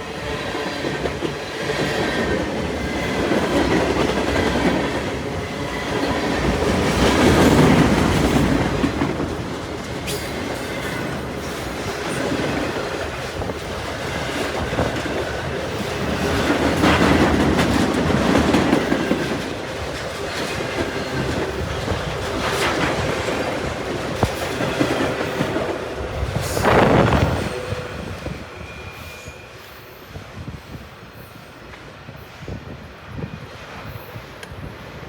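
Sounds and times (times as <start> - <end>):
train wheels clattering over rail joints: 0.5 - 28.4
wheel squeal: 26.4 - 30.1.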